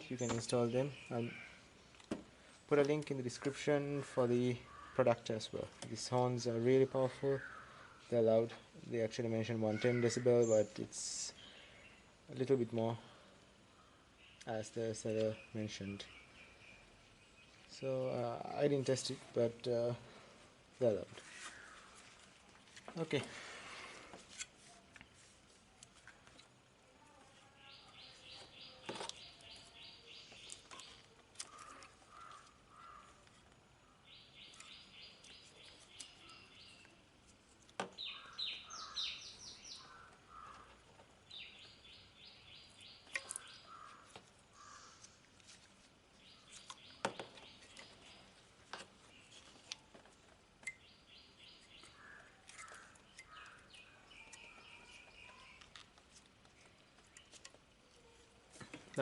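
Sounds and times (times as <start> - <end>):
songbird trilling: 38.0 - 40.7, 41.3 - 45.1, 50.7 - 55.6.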